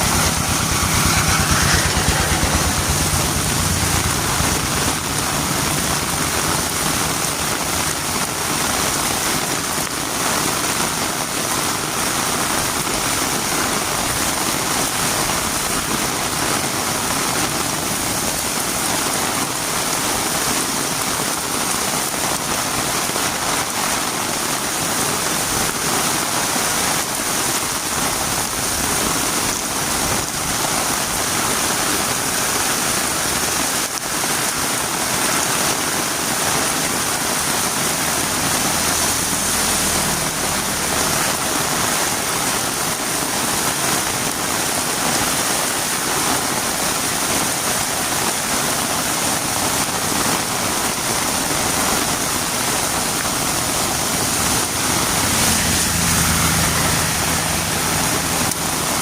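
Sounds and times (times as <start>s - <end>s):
low rumble: 0.0s - 8.6s
heavy rain on a road: 0.0s - 59.0s.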